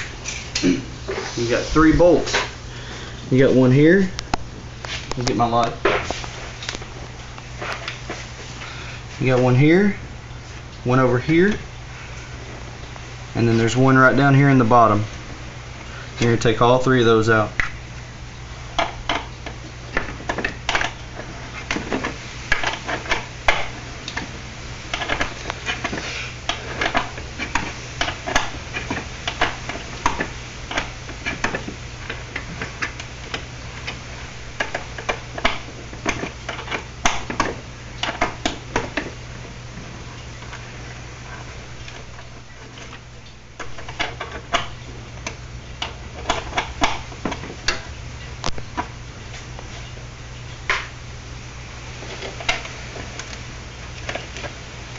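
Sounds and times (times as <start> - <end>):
steady low hum: 0.0 - 54.9.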